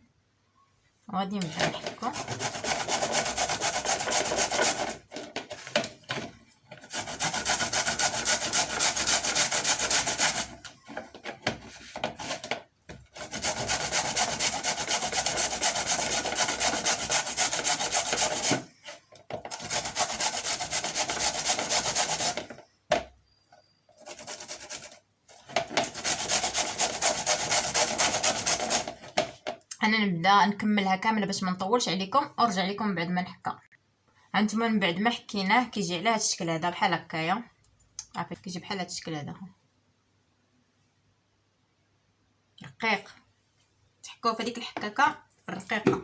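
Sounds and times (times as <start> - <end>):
turnip grated on hand grater: 2.1 - 5.2, 6.8 - 10.6, 13.1 - 18.7, 19.5 - 22.6, 24.0 - 25.0, 25.7 - 29.0.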